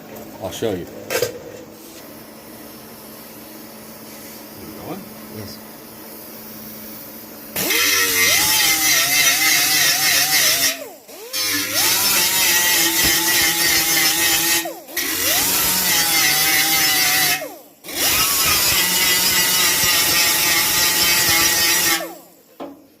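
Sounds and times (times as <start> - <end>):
angle grinder sanding steel: 7.6 - 22.2.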